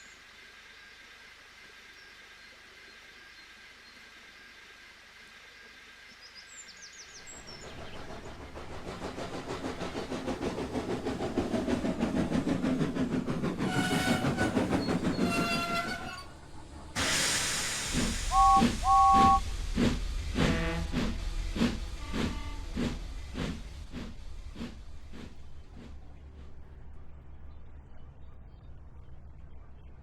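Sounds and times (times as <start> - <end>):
steam locomotive puffing: 7.3 - 26.6
steam whistle: 13.6 - 16.3, 17.0 - 19.6
two-note whistle toots: 18.3 - 19.4.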